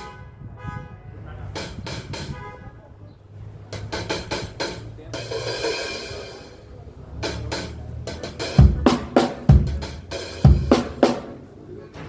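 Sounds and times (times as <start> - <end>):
drum kit beat: 1.6 - 2.4, 3.7 - 11.6
cymbal ringing: 3.7 - 11.6
heavy low drum hits: 3.8 - 6.6, 7.2 - 11.5.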